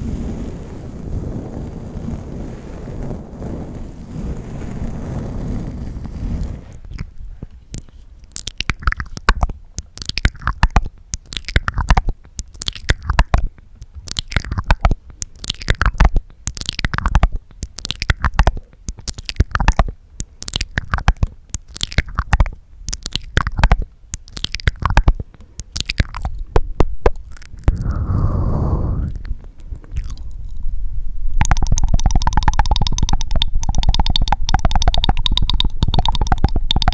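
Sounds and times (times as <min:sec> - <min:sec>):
tongue clicks and lip smacks: 0:07.7 - 0:28.0, 0:29.1 - 0:30.7, 0:31.3 - 0:36.9.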